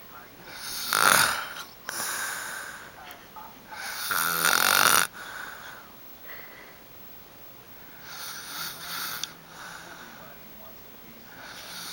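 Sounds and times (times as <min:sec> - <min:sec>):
person snoring: 0:00.5 - 0:02.7, 0:03.8 - 0:05.2, 0:11.4 - 0:11.9.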